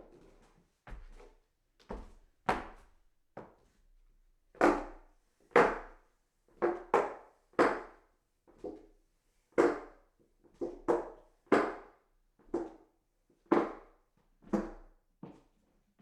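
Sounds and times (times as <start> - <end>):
footsteps on wooden stairs: 0.9 - 2.9.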